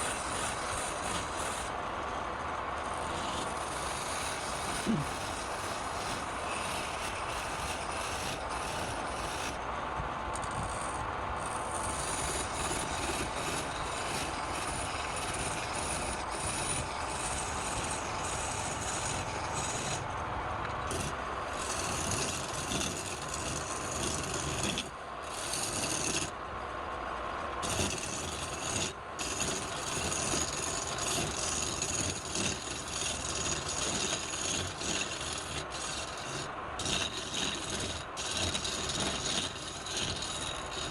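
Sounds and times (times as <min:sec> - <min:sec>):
tool scraping wood on a lathe: 0:00.0 - 0:26.6, 0:27.2 - 0:40.9.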